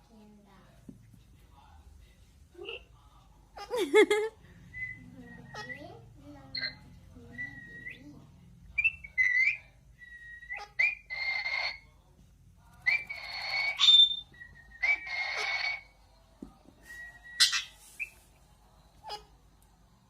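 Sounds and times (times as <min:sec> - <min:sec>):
parrot squawk: 0:05.4 - 0:05.9, 0:08.8 - 0:11.9, 0:12.9 - 0:15.9, 0:17.2 - 0:17.8, 0:19.0 - 0:19.4
parrot whistling: 0:06.6 - 0:08.1, 0:08.8 - 0:11.8, 0:12.9 - 0:15.9, 0:16.9 - 0:18.2
parrot harsh raspy calls: 0:08.8 - 0:11.8, 0:12.9 - 0:15.9, 0:17.3 - 0:17.8, 0:19.0 - 0:19.4.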